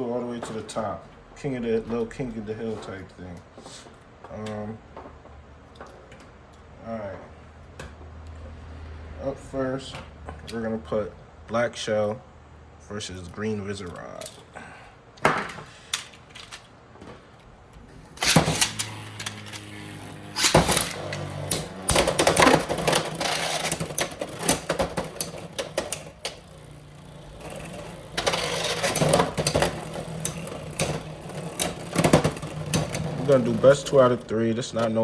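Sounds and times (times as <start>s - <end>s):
spinning tops humming: 17.9s - 34.4s
spinning tops clashing: 18.1s - 26.2s.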